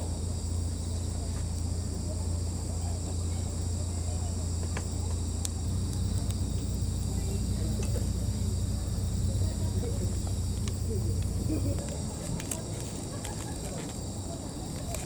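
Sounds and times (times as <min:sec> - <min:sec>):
crickets chirping: 0:00.0 - 0:15.0
low steady hum: 0:00.0 - 0:15.0.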